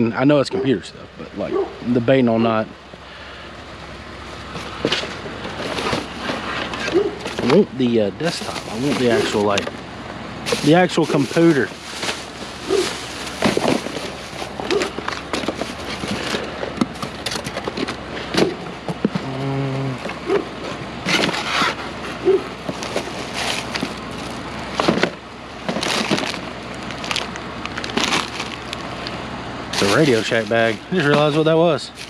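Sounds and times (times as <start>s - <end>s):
rustling: 4.2s - 9.8s, 10.4s - 28.9s, 29.7s - 32.0s
plastic objects clattering: 4.5s - 9.8s, 10.4s - 19.3s, 20.0s - 28.8s, 29.7s - 32.0s.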